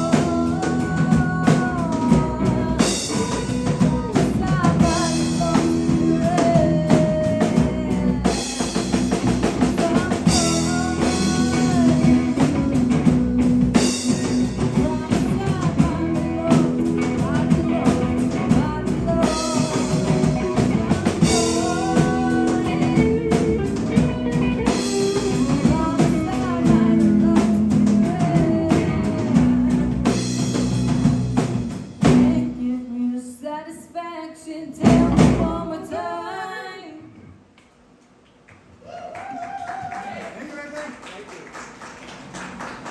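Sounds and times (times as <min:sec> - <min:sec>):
bending lead guitar line: 0:00.0 - 0:32.5
electric guitars: 0:00.0 - 0:32.6
bass guitar: 0:00.0 - 0:32.7, 0:34.8 - 0:35.8
drum kit: 0:00.0 - 0:32.7, 0:34.8 - 0:36.1.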